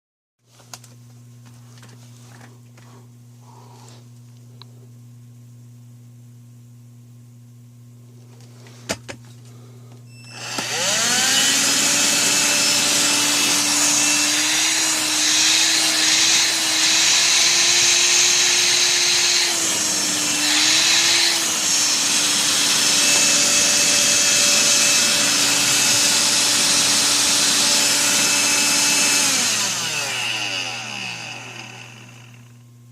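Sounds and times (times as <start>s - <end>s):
vacuum motor whining: 10.1s - 32.6s.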